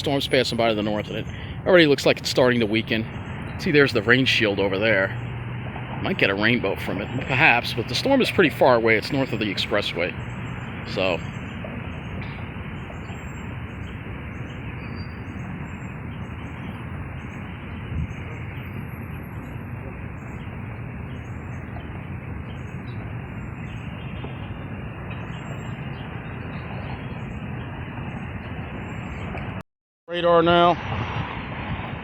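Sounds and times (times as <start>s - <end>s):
wind noise on microphone: 9.2s - 29.6s, 30.3s - 32.0s.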